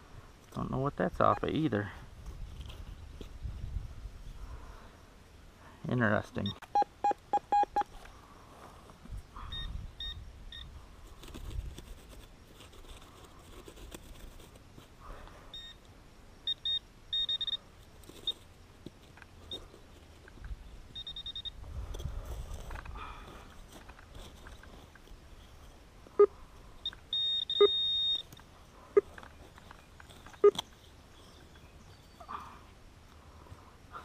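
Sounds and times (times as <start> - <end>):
metal detector beeping: 1.2 - 1.6, 6.4 - 8.0, 9.5 - 10.7, 15.5 - 15.8, 16.4 - 17.6, 20.9 - 21.6, 26.2 - 30.6.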